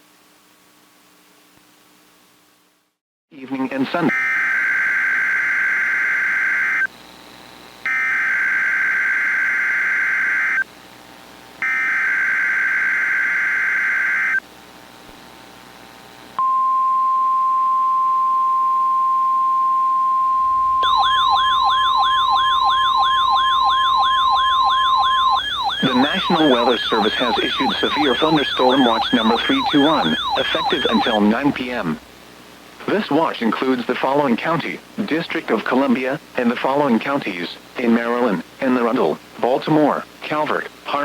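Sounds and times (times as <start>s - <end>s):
steady alarm tone: 4.1s - 6.9s, 7.8s - 10.7s, 11.6s - 14.4s, 19.3s - 32.0s
warbling siren tone: 7.9s - 10.6s, 11.6s - 14.4s, 20.1s - 31.6s.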